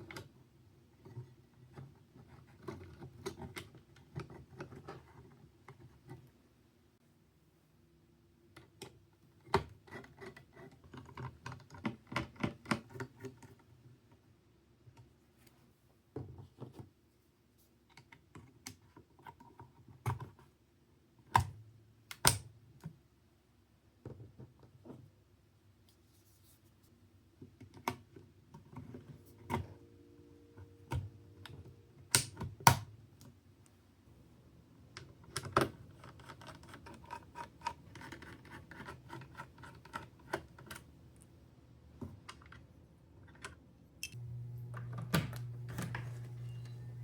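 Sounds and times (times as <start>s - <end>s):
steady low hum: 28.8s - 34.8s, 44.1s - 47.0s.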